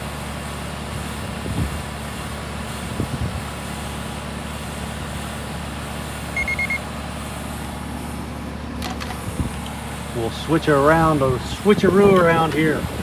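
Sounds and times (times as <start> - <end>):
low machine hum: 4.6 - 13.0
quick high electronic beeps: 6.4 - 6.8.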